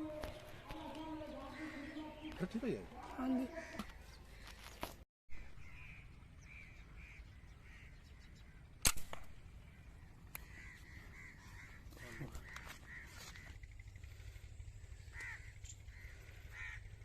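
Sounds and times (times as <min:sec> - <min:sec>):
crows cawing: 0:00.0 - 0:08.8, 0:09.6 - 0:17.0
air rifle shot: 0:08.8 - 0:09.4.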